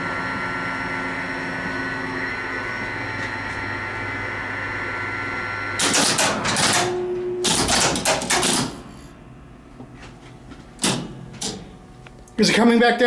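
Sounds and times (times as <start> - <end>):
elevator machine humming: 0.0 - 13.0
rapid mechanical clattering: 5.8 - 8.8.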